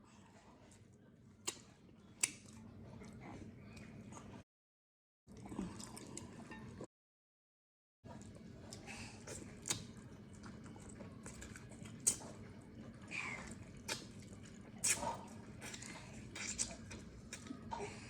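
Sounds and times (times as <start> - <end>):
chewing and mouth smacks: 1.4 - 4.4, 8.1 - 17.7.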